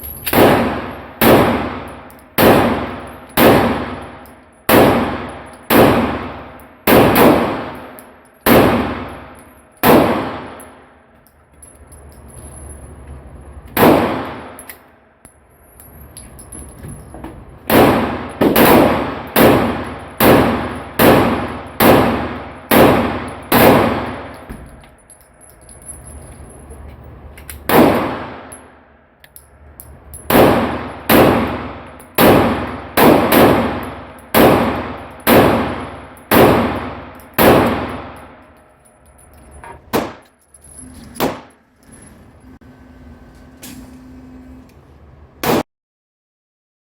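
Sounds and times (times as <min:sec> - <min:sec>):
pistol shots: 0:00.3 - 0:10.8, 0:13.8 - 0:14.7, 0:17.7 - 0:24.4, 0:27.6 - 0:28.5, 0:30.3 - 0:38.4, 0:39.9 - 0:40.2, 0:41.2 - 0:41.6, 0:45.4 - 0:45.6.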